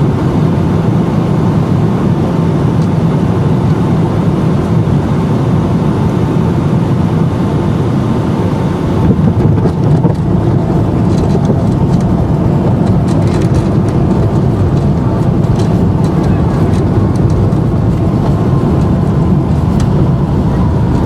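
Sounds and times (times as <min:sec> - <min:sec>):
airplane cabin rumble: 0:00.0 - 0:21.0
light rattling: 0:09.6 - 0:21.0.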